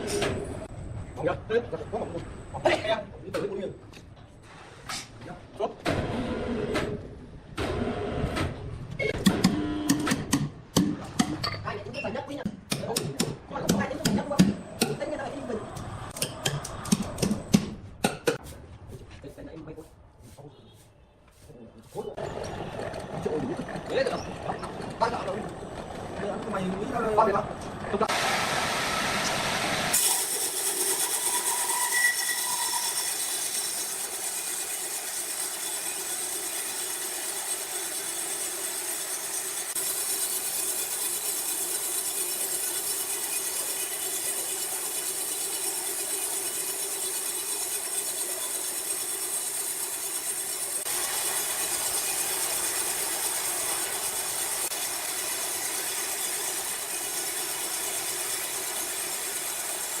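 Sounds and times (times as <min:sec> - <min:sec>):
saw running: 0:29.1 - 1:00.0.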